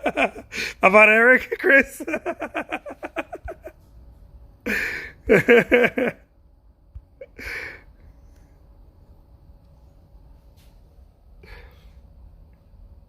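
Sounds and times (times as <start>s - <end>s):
person laughing: 0.0s - 0.9s, 1.5s - 3.8s, 4.6s - 6.3s, 7.1s - 7.8s
breathy exhales: 11.4s - 12.1s.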